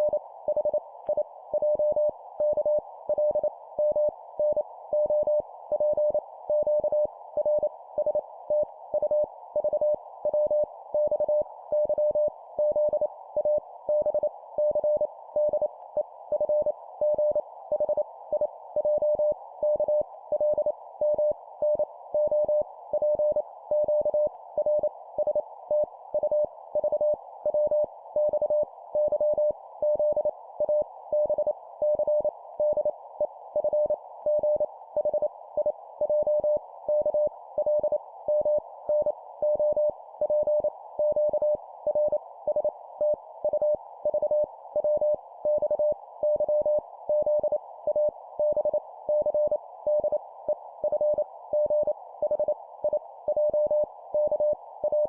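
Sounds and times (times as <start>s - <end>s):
morse code beeps: 50.9s - 55.0s.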